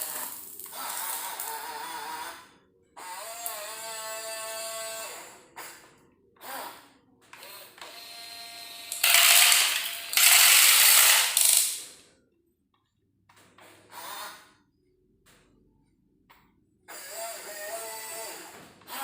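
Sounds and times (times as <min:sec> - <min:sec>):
small electric gear motors whining: 0:00.0 - 0:05.8
grinding ratcheting motor: 0:08.9 - 0:11.8.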